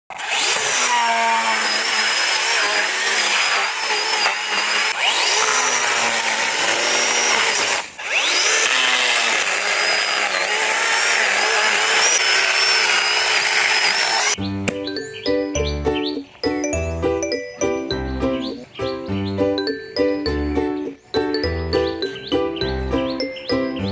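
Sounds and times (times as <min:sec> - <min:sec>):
power tool running under load: 0:00.1 - 0:14.4.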